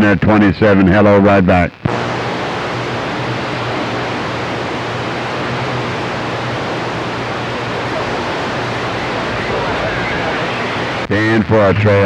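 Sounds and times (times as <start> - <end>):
radio static hiss: 0.0 - 11.6
faint low hum: 1.8 - 11.1.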